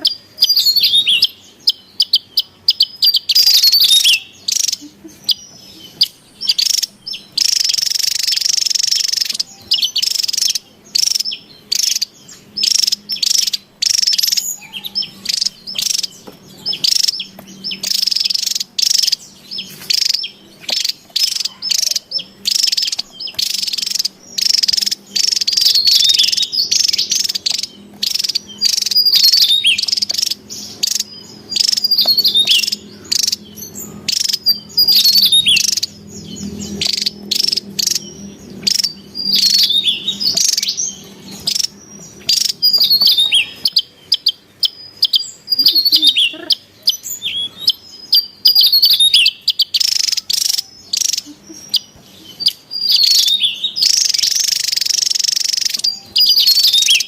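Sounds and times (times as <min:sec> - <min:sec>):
bird singing high chattering phrases: 0:00.0 - 0:57.0.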